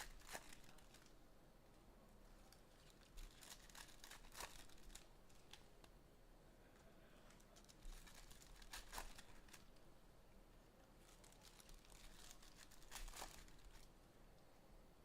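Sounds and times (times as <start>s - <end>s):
card pack wrappers crinkling: 0.0s - 1.1s, 2.5s - 5.6s, 7.3s - 9.8s, 11.0s - 13.9s
rustles and snaps of cards: 0.0s - 1.2s, 2.4s - 6.0s, 7.2s - 9.8s, 10.9s - 13.9s.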